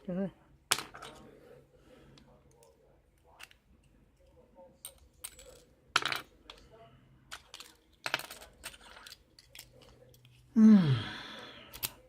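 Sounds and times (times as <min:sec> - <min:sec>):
lock parts clicking and clinking: 0:07.3 - 0:10.4, 0:11.7 - 0:12.0
person humming: 0:10.6 - 0:11.5.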